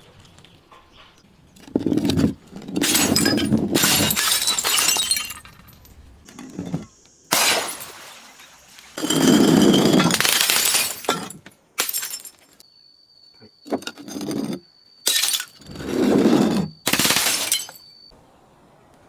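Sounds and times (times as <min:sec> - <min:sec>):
glass bottles shattering: 0:01.8 - 0:05.9, 0:06.6 - 0:12.6, 0:13.8 - 0:18.0
faint high ringing tone: 0:11.1 - 0:18.2.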